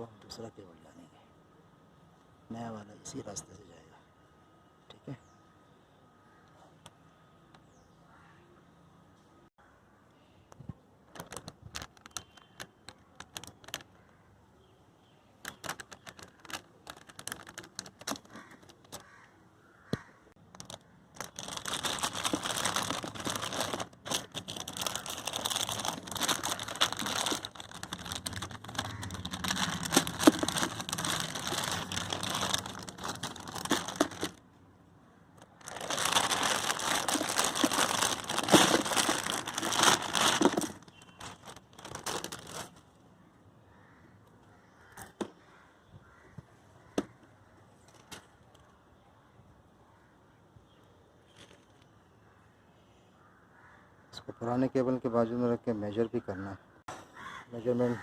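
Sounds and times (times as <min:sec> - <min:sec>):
crinkling and rustling: 0:11.0 - 0:14.2, 0:15.4 - 0:19.1, 0:20.4 - 0:34.4, 0:35.4 - 0:42.9, 0:51.3 - 0:51.9.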